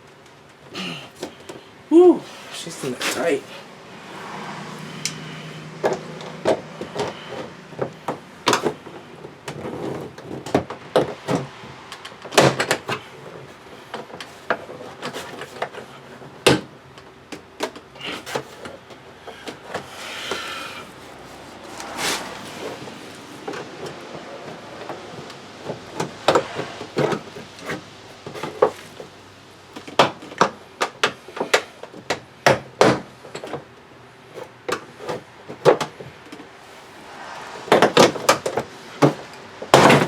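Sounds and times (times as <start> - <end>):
scraping of trim tools: 2.3 - 10.3, 17.8 - 29.0.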